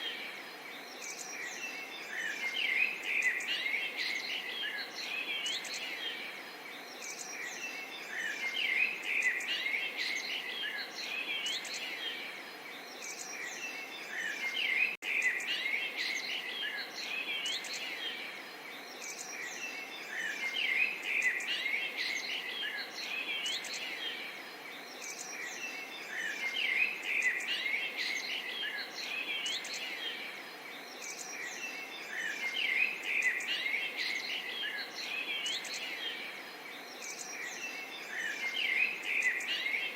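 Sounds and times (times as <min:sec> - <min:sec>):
birds chirping and singing: 0:00.0 - 0:39.9.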